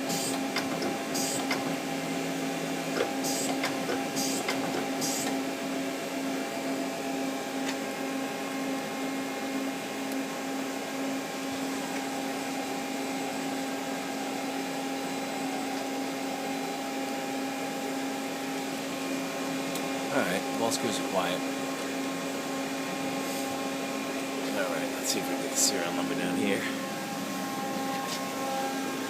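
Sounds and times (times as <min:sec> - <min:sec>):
machine tool humming: 0:00.0 - 0:10.2, 0:17.0 - 0:29.0
high machine whine: 0:00.0 - 0:29.0.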